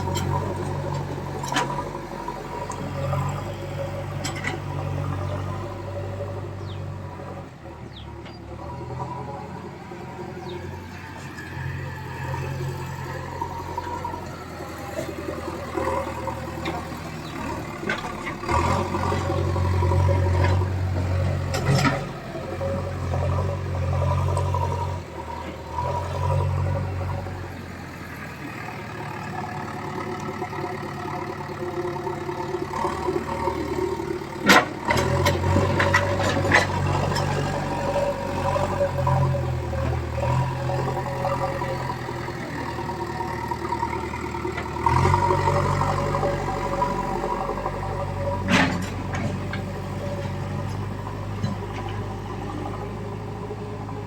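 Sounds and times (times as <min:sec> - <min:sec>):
diesel engine working under load: 0:00.0 - 0:54.0.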